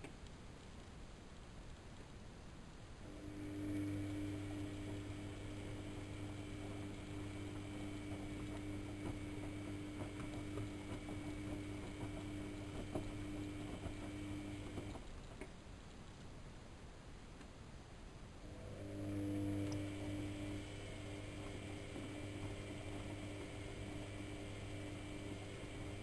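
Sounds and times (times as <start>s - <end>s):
washing machine motor humming: 3.0s - 15.6s, 18.4s - 26.0s.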